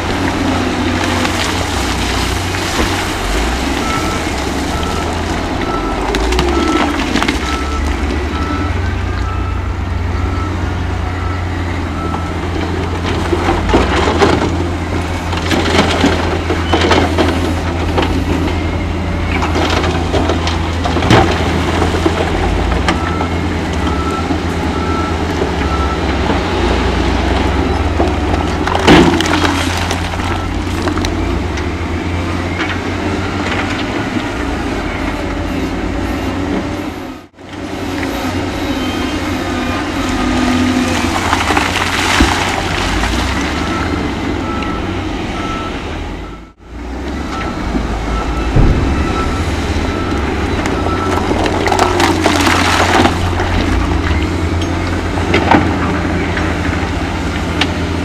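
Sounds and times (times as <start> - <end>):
heavy diesel machines running: 0.0 - 58.0
reversing alarm beeping: 3.5 - 13.1, 22.8 - 29.4, 43.4 - 52.8.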